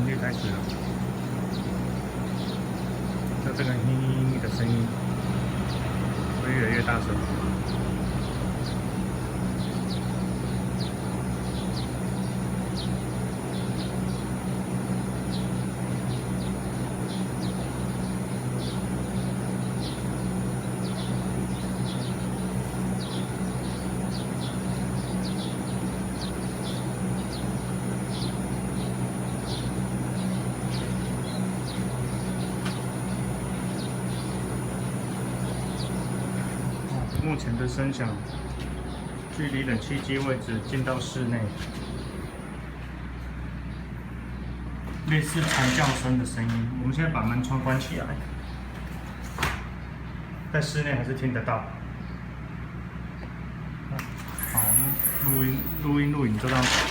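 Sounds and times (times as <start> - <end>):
air conditioner hum: 0.0 - 56.9
short high electrical chirps: 54.2 - 55.9.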